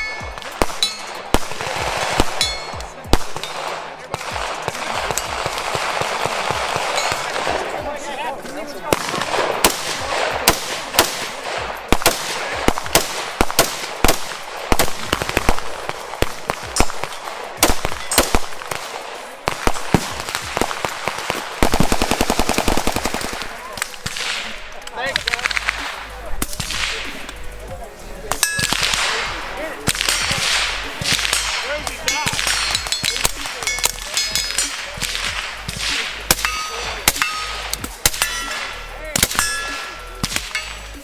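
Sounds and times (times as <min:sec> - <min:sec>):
automatic gunfire burst: 0:00.0 - 0:07.8, 0:08.9 - 0:24.6
single gunshots: 0:00.0 - 0:07.8, 0:08.9 - 0:27.4, 0:28.3 - 0:41.0.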